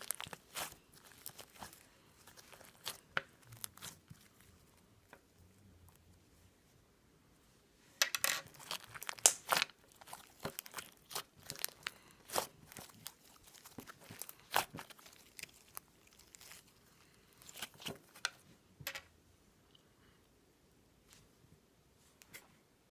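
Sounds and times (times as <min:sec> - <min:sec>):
crinkling handling noises: 0:00.0 - 0:06.2, 0:08.0 - 0:18.6.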